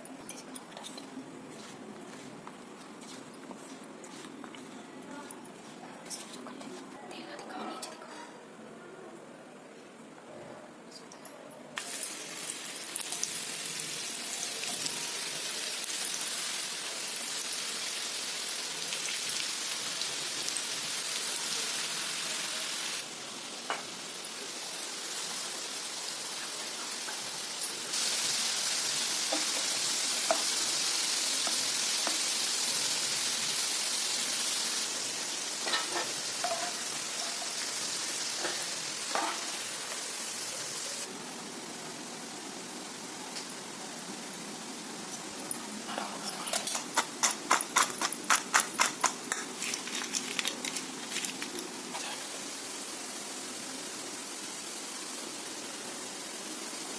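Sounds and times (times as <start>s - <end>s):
fries sizzling in hot oil: 11.8s - 56.9s
utensil clicking on pan: 46.5s - 50.8s.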